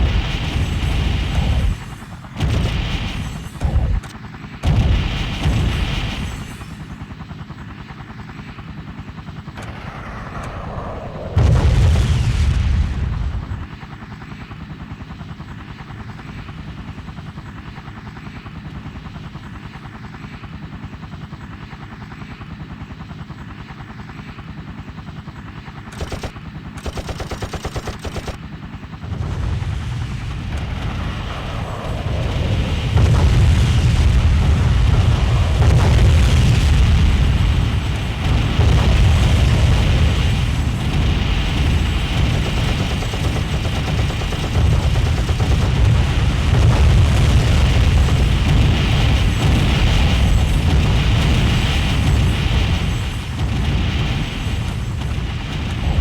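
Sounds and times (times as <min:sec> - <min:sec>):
explosions: 0:00.0 - 0:04.0, 0:04.6 - 0:06.7, 0:09.6 - 0:13.7, 0:29.0 - 0:56.0
machine-gun fire: 0:00.0 - 0:04.0, 0:26.0 - 0:28.4, 0:32.1 - 0:56.0
helicopter rotor chop: 0:00.0 - 0:56.0
heavy boom: 0:09.6 - 0:13.6, 0:29.2 - 0:41.9.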